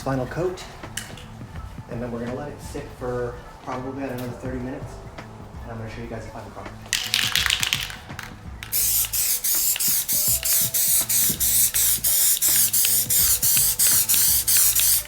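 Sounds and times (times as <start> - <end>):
aerosol spray can hissing: 7.0 - 15.0.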